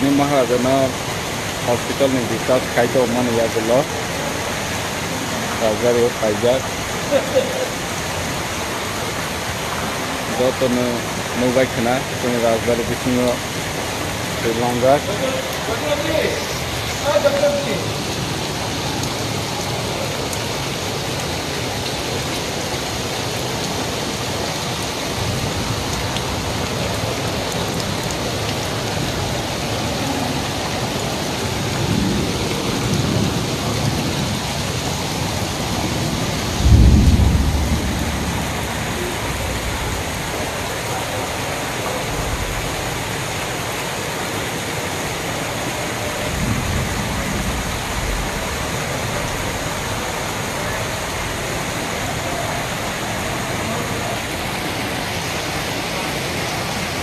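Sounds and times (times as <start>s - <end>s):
heavy rain falling: 0.0s - 57.0s
low thunder rumbles: 35.7s - 40.4s, 46.3s - 50.0s.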